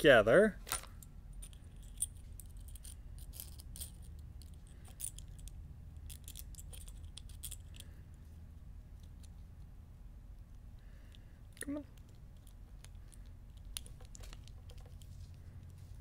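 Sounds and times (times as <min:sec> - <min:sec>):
small connector parts clicking: 0:00.7 - 0:07.9, 0:10.5 - 0:15.8.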